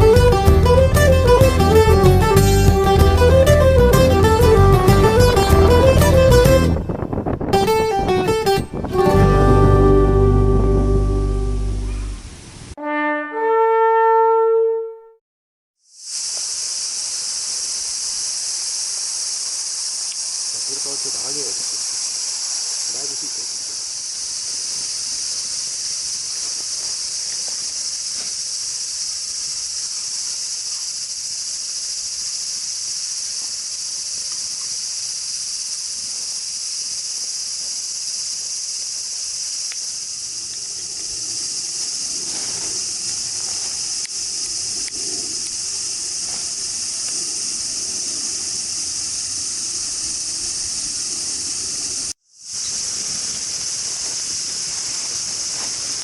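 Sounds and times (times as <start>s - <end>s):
lower busy sound: 8.4s - 12.8s
high-pitched hiss: 15.8s - 56.0s.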